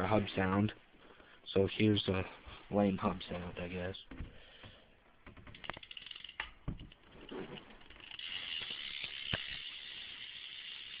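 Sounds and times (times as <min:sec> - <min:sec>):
bike hub ticking buzz: 0:05.5 - 0:07.0, 0:07.8 - 0:11.0.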